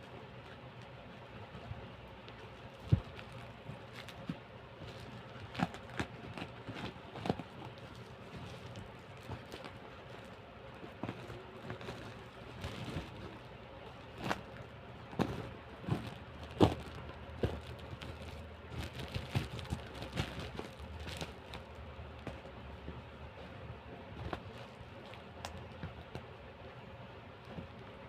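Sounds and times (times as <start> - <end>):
boxes being handled and unpacked: 1.7 - 26.3.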